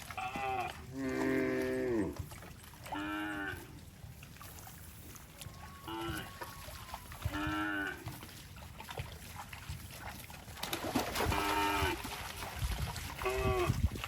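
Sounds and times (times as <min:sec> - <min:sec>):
cattle mooing: 0:00.2 - 0:02.2, 0:02.9 - 0:03.7, 0:05.6 - 0:08.1, 0:11.3 - 0:12.0.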